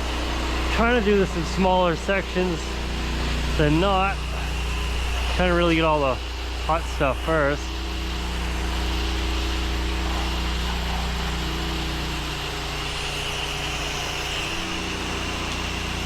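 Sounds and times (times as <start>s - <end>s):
pressure washer engine running: 0.0s - 16.0s.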